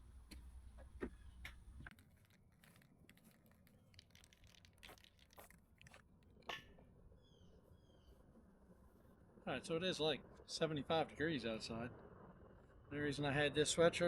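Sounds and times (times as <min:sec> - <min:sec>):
faint low hum: 0:00.0 - 0:14.0
faint clicks and rustles: 0:00.2 - 0:07.0.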